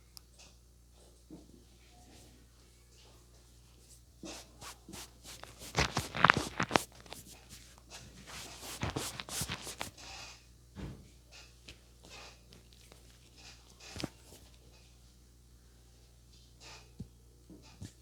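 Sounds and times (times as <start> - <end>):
hands rubbing skin and hair: 4.2 - 10.0, 14.0 - 14.4.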